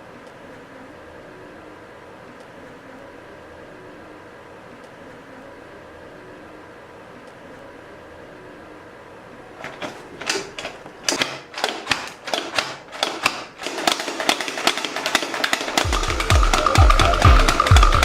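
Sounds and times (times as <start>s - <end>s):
vegetable chopper clacking: 9.6s - 18.0s.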